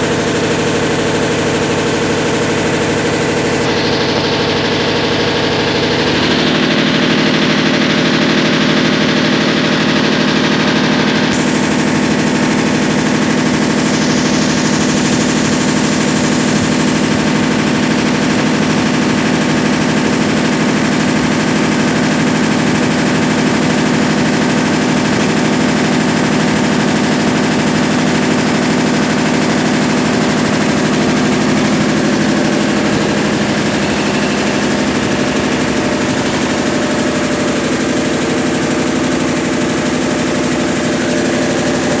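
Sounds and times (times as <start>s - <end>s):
washing machine running: 0.0s - 42.0s.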